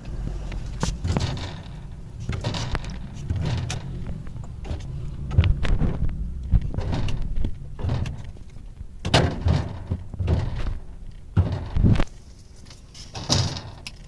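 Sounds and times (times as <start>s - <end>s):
products clunking onto shelves: 0.8s - 6.0s, 9.0s - 12.1s.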